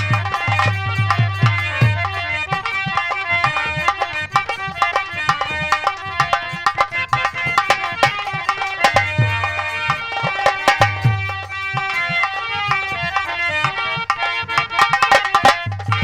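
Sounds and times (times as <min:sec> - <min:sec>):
held melodic notes: 0:00.0 - 0:16.0
rapid hand-drum strokes: 0:00.0 - 0:16.0.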